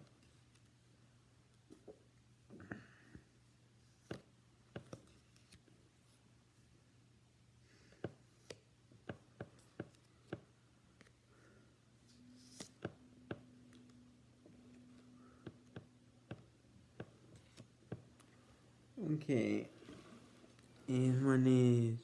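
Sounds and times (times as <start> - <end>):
faint steady hum: 0.0 - 22.0
trading cards clicking and tapping: 7.9 - 11.1, 15.4 - 18.3.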